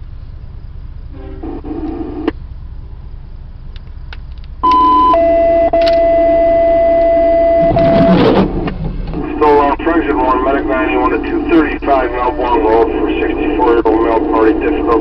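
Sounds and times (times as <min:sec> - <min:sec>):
two-tone paging alert: 0:04.6 - 0:08.2
faint radio hiss: 0:09.2 - 0:15.0.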